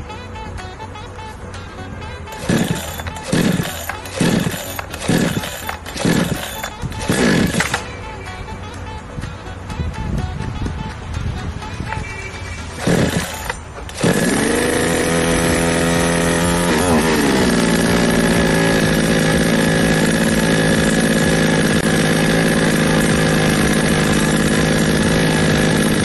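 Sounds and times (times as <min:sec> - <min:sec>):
chainsaw engine revving: 0:02.2 - 0:08.4, 0:12.5 - 0:26.0.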